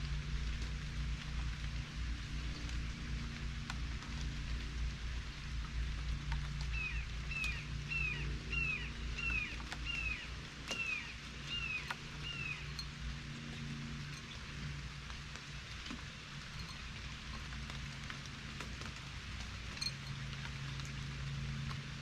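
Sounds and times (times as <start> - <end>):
drip-like ticks: 0.0 - 22.0
low steady hum: 0.0 - 22.0
rain-like hiss: 0.0 - 22.0
songbird call notes: 6.6 - 12.9.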